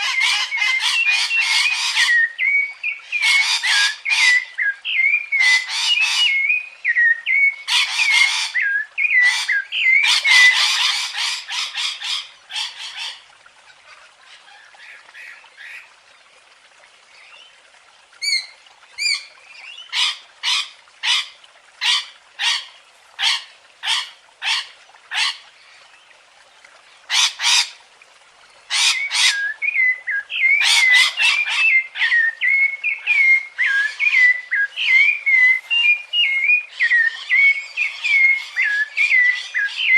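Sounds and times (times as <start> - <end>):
birds squawking harshly: 19.9 - 25.4.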